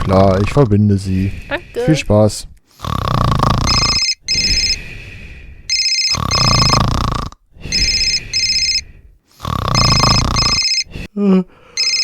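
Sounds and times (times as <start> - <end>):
person snoring loudly: 2.8 - 4.0, 6.1 - 7.4, 9.4 - 10.6
telephone ringing: 3.7 - 4.8, 5.7 - 6.8, 7.7 - 8.9, 9.7 - 10.9, 11.8 - 12.0.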